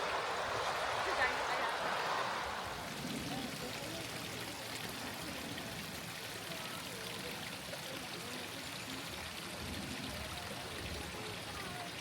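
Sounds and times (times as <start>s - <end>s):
water flowing in a stream: 0.0s - 12.0s.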